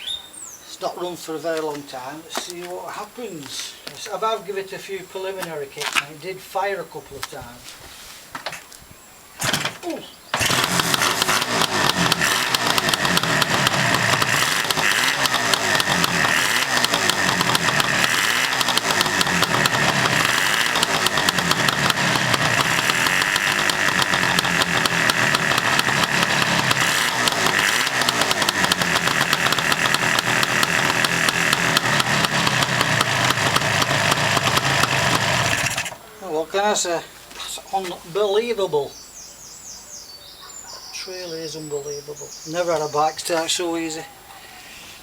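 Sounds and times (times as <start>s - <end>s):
two-stroke motorcycle engine revving: 9.4s - 36.0s.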